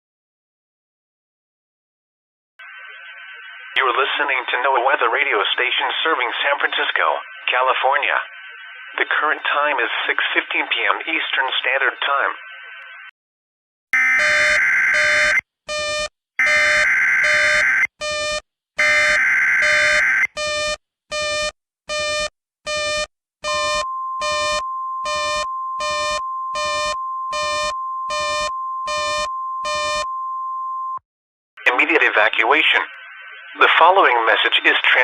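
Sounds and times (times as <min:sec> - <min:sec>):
steady warning alarm tone: 0:14.0 - 0:30.1
short electronic beeps: 0:21.9 - 0:31.0.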